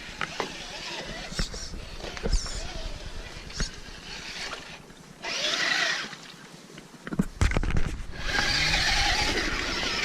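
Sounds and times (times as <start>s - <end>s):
toy car motor whining: 0.0s - 6.1s, 8.2s - 10.0s.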